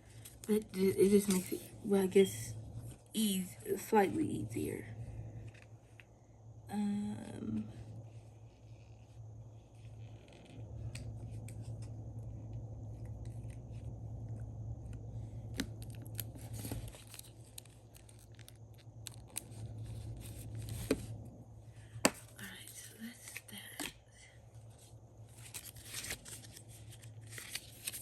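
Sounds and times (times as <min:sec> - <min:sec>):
low hum: 0:00.0 - 0:28.0
paper stickers clicking and rustling: 0:15.6 - 0:21.0, 0:25.3 - 0:28.0.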